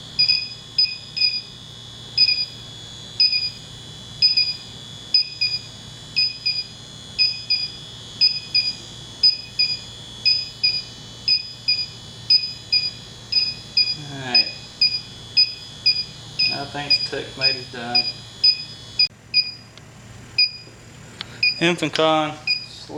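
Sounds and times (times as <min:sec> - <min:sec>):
high two-tone beeps: 0:06.2 - 0:19.7, 0:20.4 - 0:20.7, 0:21.4 - 0:21.6.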